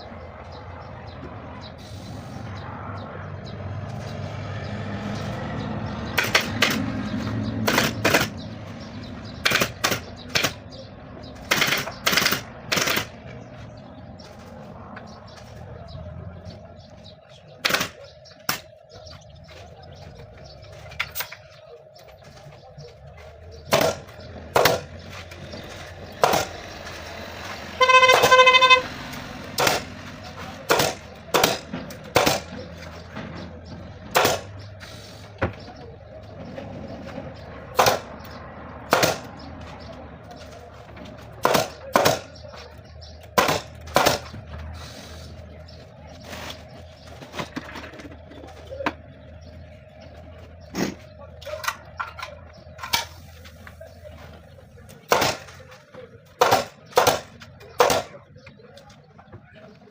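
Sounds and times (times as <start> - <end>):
short horn honk: 27.8 - 28.9.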